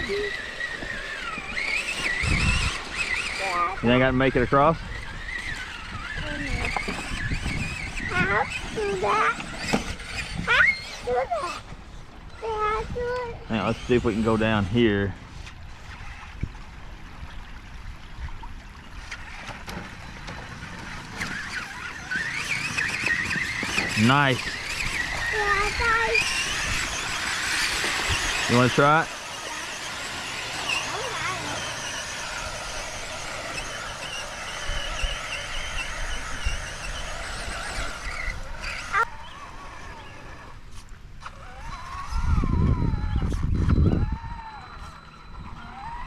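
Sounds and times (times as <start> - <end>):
high motor whine: 0.0 - 46.0
water splashing: 13.8 - 40.7.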